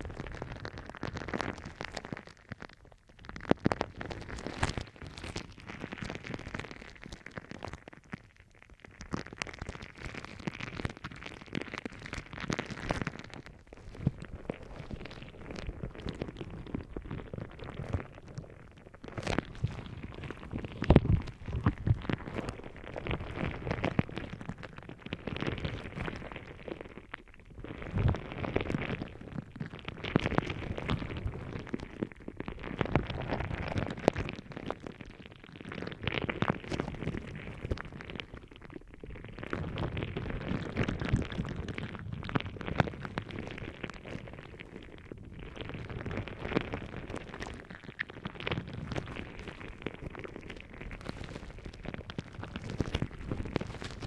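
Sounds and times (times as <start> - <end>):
gel ball squelching on microphone: 43.0 - 54.0.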